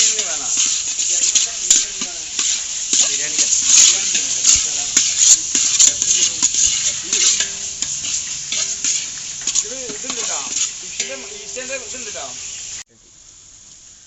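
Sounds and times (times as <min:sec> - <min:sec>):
utensil scraping a pan: 0:00.0 - 0:12.8
food sizzling in hot oil: 0:00.0 - 0:14.0.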